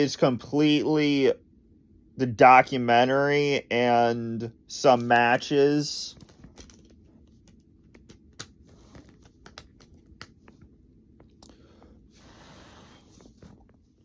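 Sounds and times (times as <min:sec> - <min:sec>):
light plastic rustling: 0:06.1 - 0:12.0, 0:13.0 - 0:14.0.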